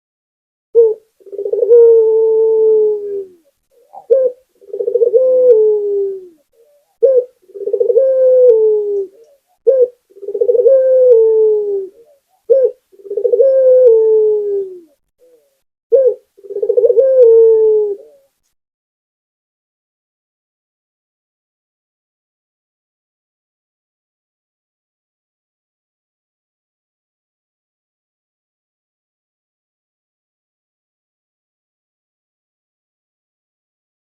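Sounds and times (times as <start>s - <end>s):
dove cooing: 0.8s - 18.3s.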